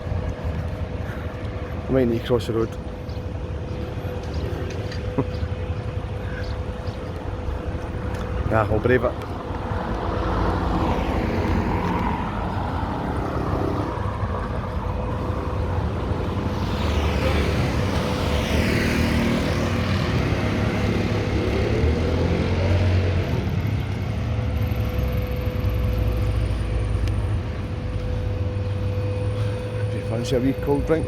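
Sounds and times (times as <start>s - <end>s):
road traffic passing: 0.0s - 31.0s
vehicle sweeping past: 9.4s - 24.0s
engine revving: 10.1s - 14.1s, 15.0s - 24.0s.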